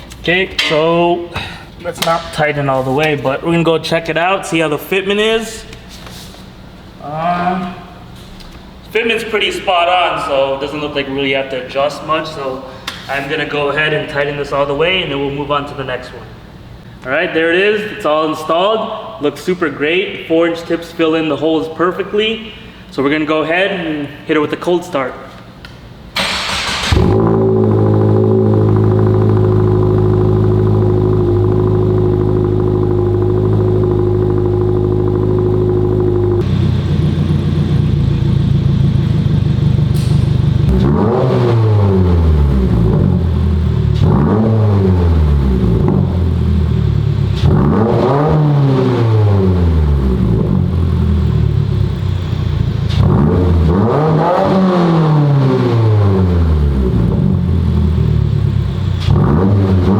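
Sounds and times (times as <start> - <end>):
car engine idling: 26.2 - 53.8, 56.0 - 59.9
car engine revving: 26.2 - 59.9.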